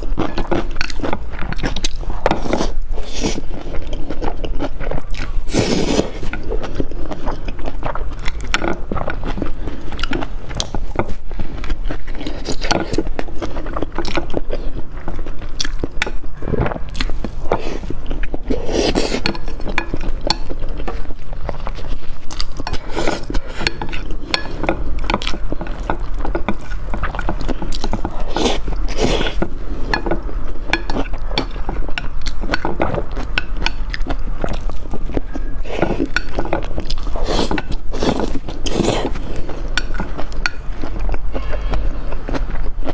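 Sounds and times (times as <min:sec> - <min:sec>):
biting and chewing: 0:00.0 - 0:42.9
steady low hum: 0:00.0 - 0:42.9.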